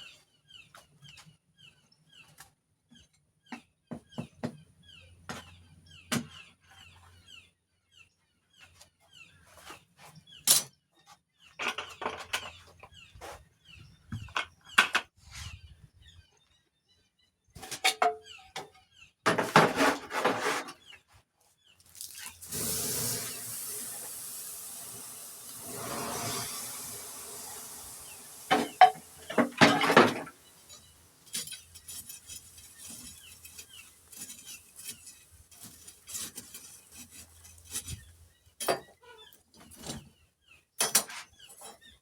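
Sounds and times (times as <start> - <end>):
bird chirping: 0.0 - 19.2
tongs knocking and clattering: 28.5 - 38.0.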